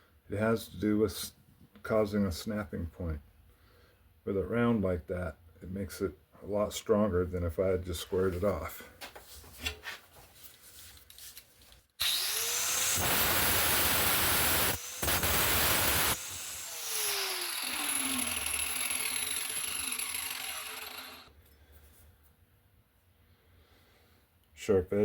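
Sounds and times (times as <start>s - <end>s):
cutting wheel grinding metal: 12.0s - 21.3s
cutting wheel whining: 12.0s - 21.3s.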